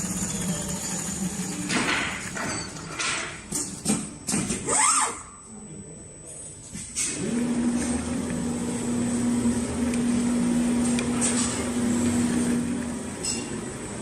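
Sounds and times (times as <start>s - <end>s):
machine humming: 0.0s - 3.9s.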